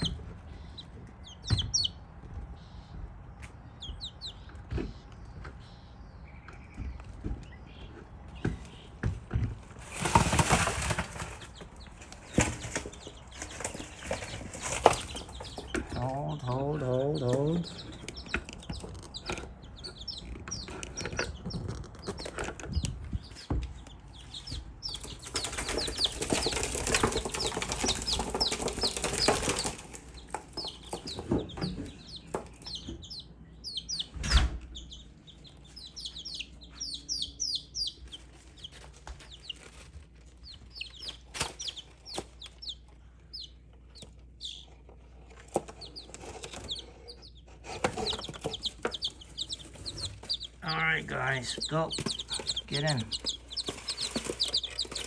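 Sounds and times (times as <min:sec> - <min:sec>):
chicks peeping: 0:00.0 - 0:55.0
loud rustling: 0:09.6 - 0:16.0, 0:24.1 - 0:31.3, 0:47.5 - 0:55.0.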